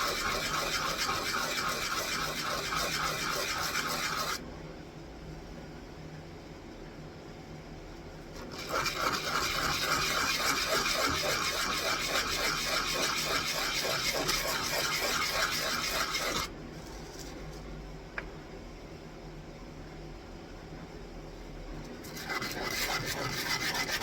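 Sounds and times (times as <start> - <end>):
wooden peg being sanded: 0.0 - 4.4, 8.4 - 16.5, 22.1 - 24.0.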